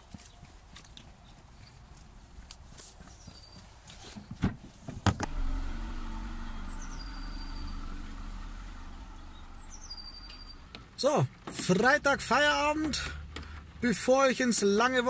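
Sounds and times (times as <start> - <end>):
car engine starting and running: 5.0 - 14.1.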